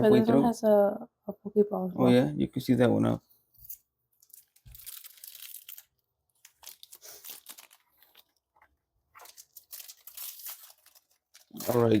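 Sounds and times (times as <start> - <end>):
foil wrapper crinkling: 3.7 - 8.5, 9.1 - 12.0.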